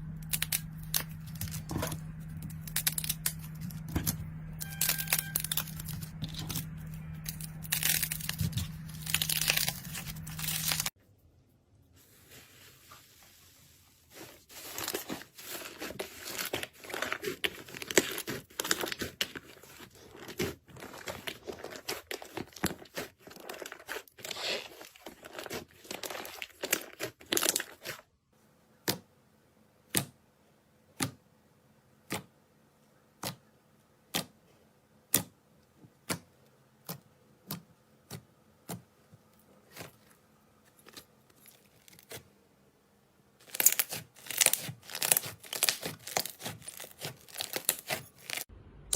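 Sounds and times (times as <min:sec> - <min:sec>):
slime crackling and popping: 0:00.2 - 0:11.0, 0:14.5 - 0:28.0, 0:43.4 - 0:48.5.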